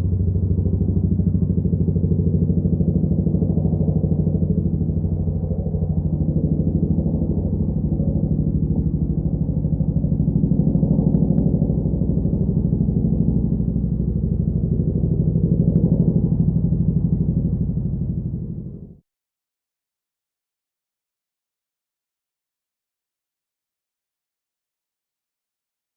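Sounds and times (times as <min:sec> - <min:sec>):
helicopter rotor blades beating: 0:00.0 - 0:18.9
deep engine drone: 0:00.0 - 0:19.0.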